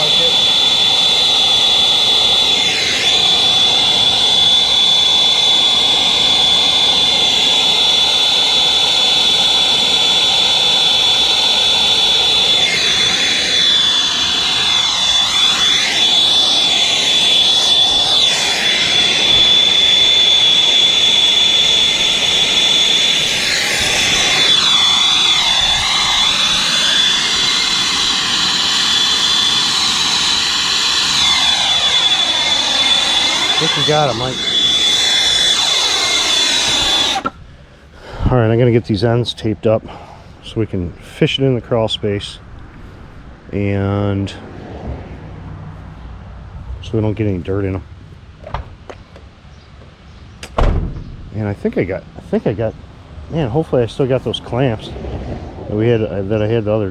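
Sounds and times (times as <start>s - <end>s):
brazing torch hissing: 0.0s - 37.4s
torch high whistle: 0.0s - 37.4s.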